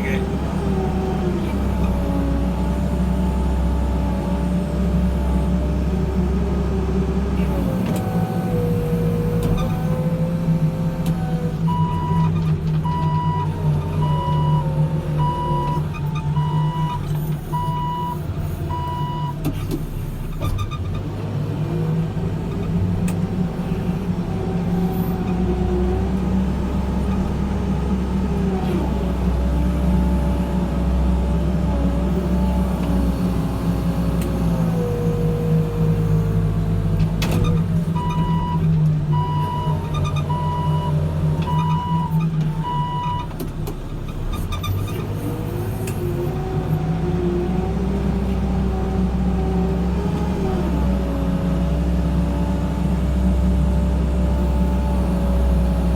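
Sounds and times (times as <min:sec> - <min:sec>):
diesel engine under load: 0:00.0 - 0:55.9
reversing alarm beeping: 0:12.9 - 0:15.8.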